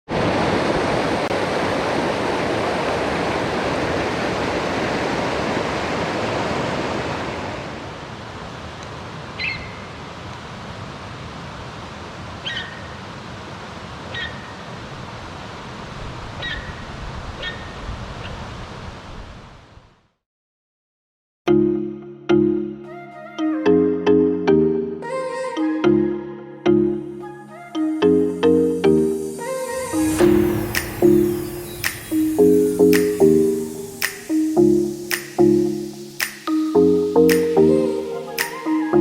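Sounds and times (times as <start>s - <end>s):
stream water rushing: 0.1s - 19.2s, 28.1s - 39.0s.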